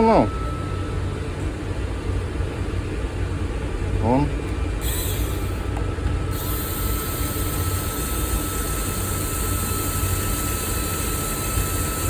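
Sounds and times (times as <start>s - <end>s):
cordless screwdriver whining: 6.3s - 12.0s.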